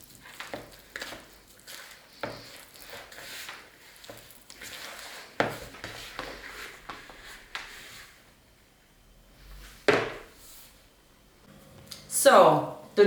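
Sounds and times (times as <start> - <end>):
hands kneading dough: 0.0 - 8.4
dough thudding on work surface: 9.9 - 10.3.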